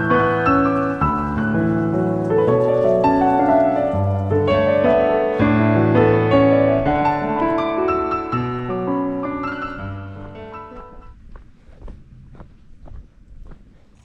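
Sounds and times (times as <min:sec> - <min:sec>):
gentle piano melody: 0:00.0 - 0:11.2.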